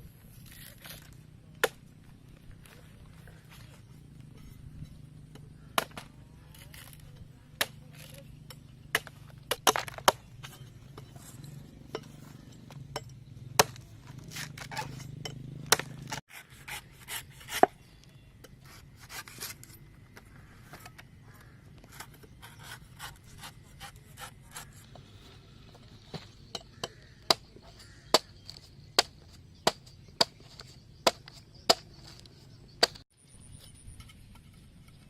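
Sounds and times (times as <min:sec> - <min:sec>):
wood and tools knocking and scraping: 0:02.4 - 0:35.0.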